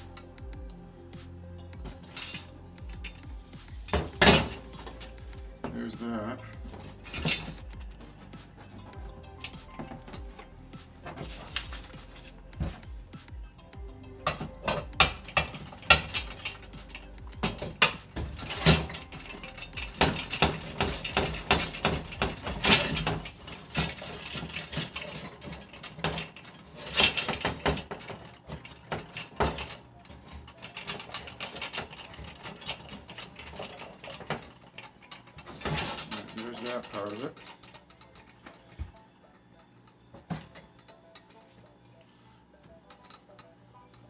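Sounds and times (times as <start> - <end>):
metal parts clinking: 1.8 - 13.0, 14.1 - 41.8, 42.8 - 44.0
ratchet wrench clicking: 14.2 - 38.6.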